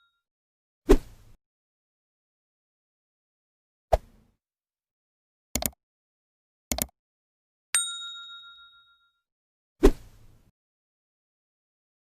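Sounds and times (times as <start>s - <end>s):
mouse clicks: 5.6s - 5.8s, 6.7s - 6.9s
notification bell ding: 7.8s - 9.2s.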